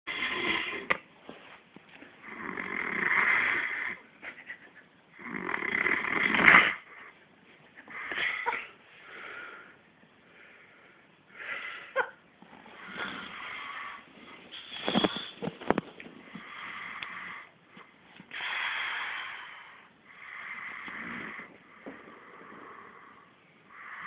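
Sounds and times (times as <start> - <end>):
man snoring heavily: 2.2 - 4.0, 5.2 - 6.8, 20.2 - 21.5.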